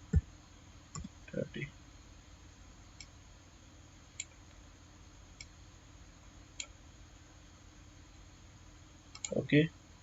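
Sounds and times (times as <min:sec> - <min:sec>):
low room hum: 0:00.0 - 0:10.0
computer mouse clicks: 0:03.0 - 0:03.2, 0:04.2 - 0:04.6, 0:06.6 - 0:06.8, 0:09.1 - 0:09.4.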